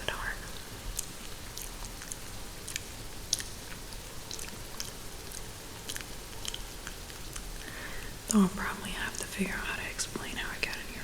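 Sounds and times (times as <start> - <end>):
wet mouth chewing clicks: 0.9 - 7.7.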